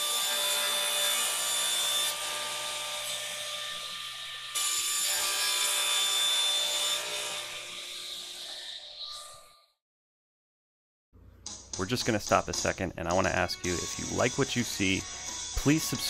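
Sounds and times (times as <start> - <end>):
table saw whining: 0.0 - 9.8.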